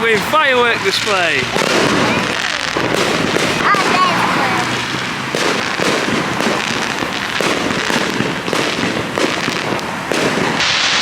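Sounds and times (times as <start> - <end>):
fireworks bangs and crackling: 0.0 - 11.0.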